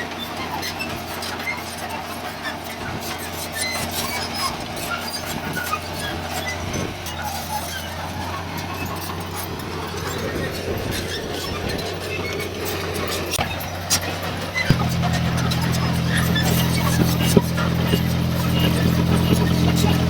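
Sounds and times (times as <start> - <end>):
heavy machinery diesel engine: 12.2 - 20.0.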